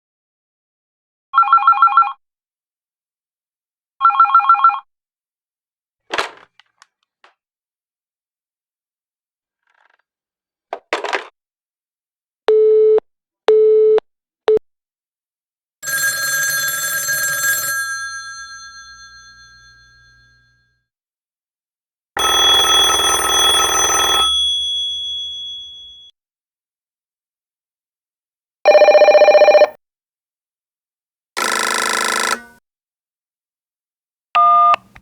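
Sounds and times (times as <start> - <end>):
telephone bell ringing: 15.8 - 20.7, 22.2 - 26.1, 28.7 - 29.8, 31.4 - 32.5.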